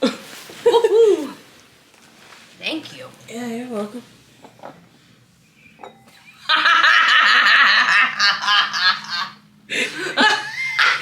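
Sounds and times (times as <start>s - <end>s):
loud excited laughter: 6.3s - 11.0s.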